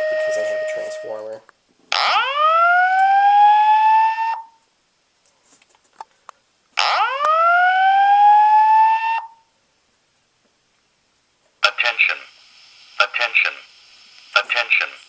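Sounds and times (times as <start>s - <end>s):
fire alarm whoop tone: 0.0s - 1.2s, 2.0s - 4.6s, 6.8s - 9.4s.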